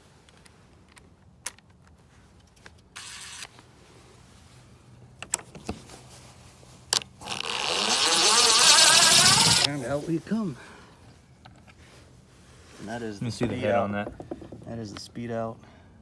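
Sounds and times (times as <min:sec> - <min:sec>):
cordless drill running under load: 0:07.2 - 0:09.7.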